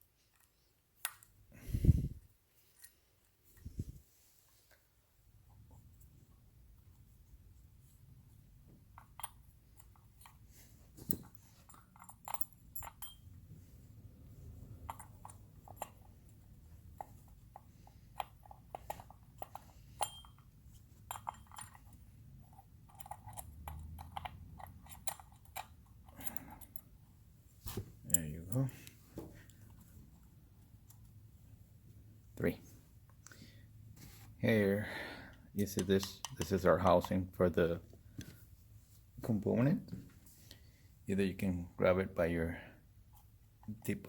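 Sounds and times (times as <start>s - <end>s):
hex key clicks and clinks: 11.2s - 13.4s, 14.8s - 26.9s.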